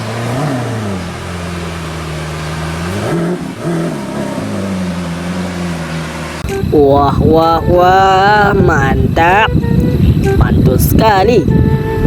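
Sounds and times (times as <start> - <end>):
car engine revving: 0.0 - 10.8.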